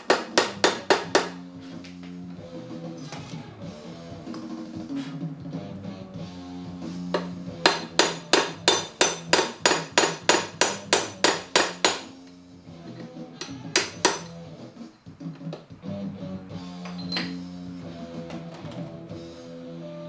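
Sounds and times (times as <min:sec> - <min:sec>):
hammer striking metal: 0:00.0 - 0:01.4, 0:07.1 - 0:12.4, 0:13.4 - 0:14.4
background music: 0:00.0 - 0:20.0.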